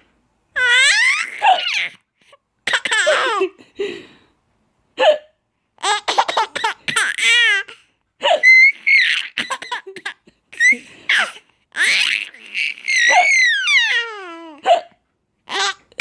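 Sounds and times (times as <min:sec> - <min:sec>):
baby laughing and squealing: 0:00.6 - 0:02.0, 0:05.8 - 0:14.8, 0:15.5 - 0:16.0.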